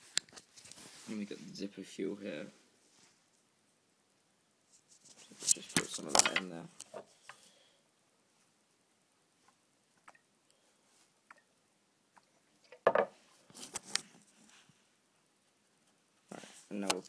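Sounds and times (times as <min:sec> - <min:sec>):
rustling: 0:00.0 - 0:01.6, 0:04.7 - 0:07.6.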